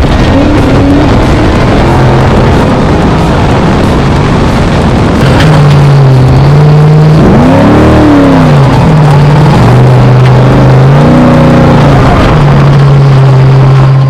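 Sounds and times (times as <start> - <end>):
truck engine revving: 0.0 - 14.0.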